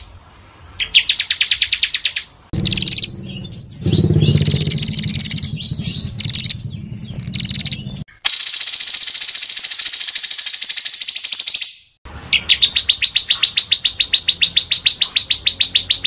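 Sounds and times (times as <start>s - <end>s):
songbirds trilling and chirping: 0.8s - 8.3s
low pulsing rattle: 2.6s - 8.1s
rapid clicking trill: 2.6s - 9.6s.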